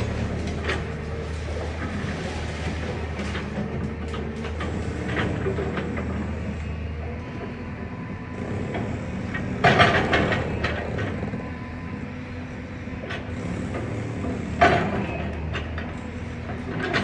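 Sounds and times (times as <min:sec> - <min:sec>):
demolition debris crashing: 0:00.0 - 0:04.7
excavator diesel engine running: 0:00.0 - 0:17.0.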